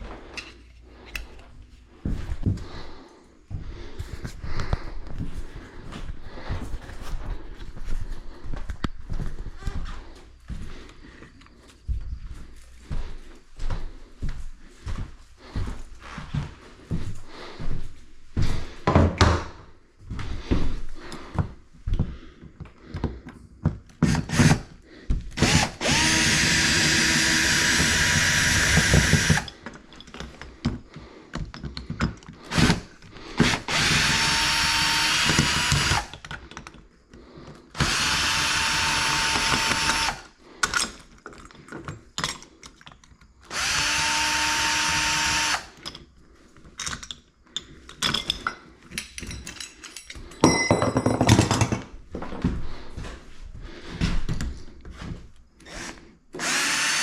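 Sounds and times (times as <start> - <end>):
power drill whining: 24.0 - 24.7, 25.4 - 29.6, 32.4 - 36.2, 37.7 - 40.4, 43.4 - 45.8, 55.6 - 57.0
knocks and handling clatter: 29.4 - 33.2, 40.6 - 43.4, 45.8 - 52.5.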